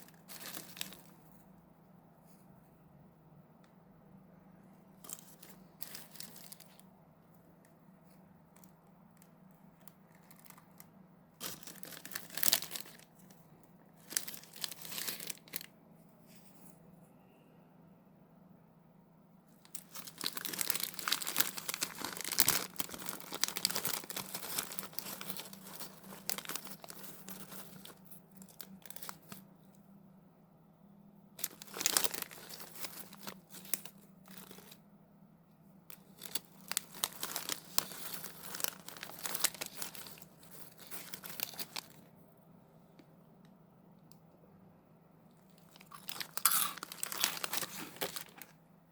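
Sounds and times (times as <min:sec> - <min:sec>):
crinkly snack packaging tearing: 0:00.0 - 0:01.2, 0:05.0 - 0:06.8, 0:08.5 - 0:13.4, 0:14.0 - 0:15.7, 0:19.6 - 0:29.4, 0:31.4 - 0:34.8, 0:35.9 - 0:42.1, 0:45.5 - 0:48.6
faint low hum: 0:00.0 - 0:48.9.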